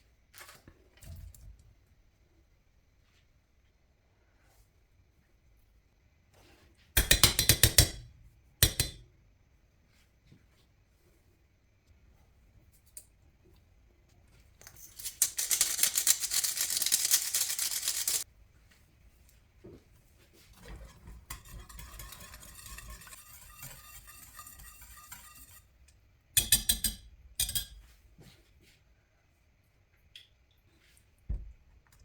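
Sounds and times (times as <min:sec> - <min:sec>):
utensils clattering: 0:14.6 - 0:18.2, 0:20.8 - 0:25.6
rapid scraping strokes: 0:15.0 - 0:18.2, 0:20.6 - 0:25.7.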